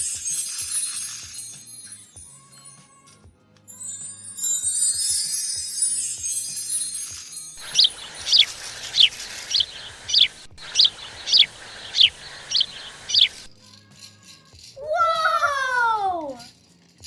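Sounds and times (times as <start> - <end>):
high tinkling: 0.0 - 17.0
high falling chirps: 7.6 - 13.6.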